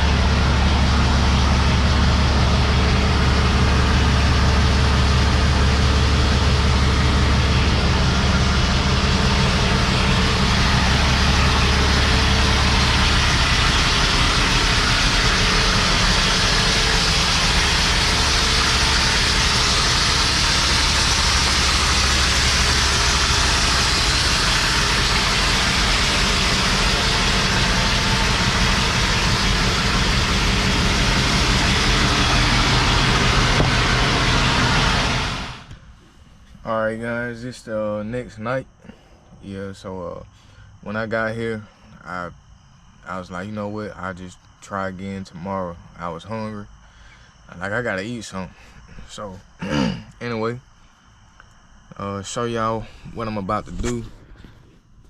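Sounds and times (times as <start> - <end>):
diesel engine humming: 0.0 - 50.6
loud even hiss: 6.4 - 35.9.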